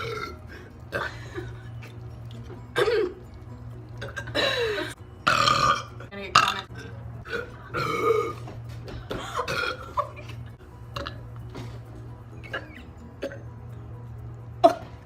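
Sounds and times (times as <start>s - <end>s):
girl burping: 2.7s - 3.2s, 4.0s - 8.4s, 9.2s - 10.4s.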